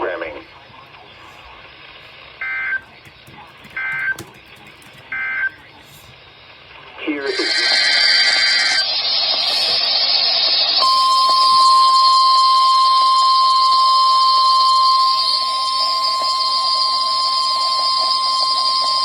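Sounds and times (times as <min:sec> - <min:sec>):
radio static hiss: 0:00.0 - 0:03.7, 0:05.0 - 0:10.8
steady high alarm tone: 0:02.4 - 0:05.7, 0:10.8 - 0:19.0.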